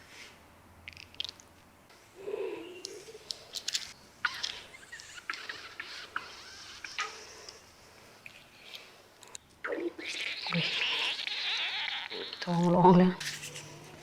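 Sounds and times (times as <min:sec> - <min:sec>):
gurgling pops and squeaks: 0:08.2 - 0:14.0.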